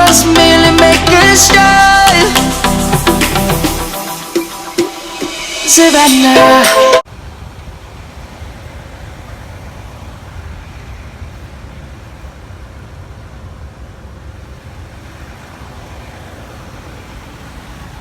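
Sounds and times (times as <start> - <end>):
car driving on road: 7.1 - 18.0.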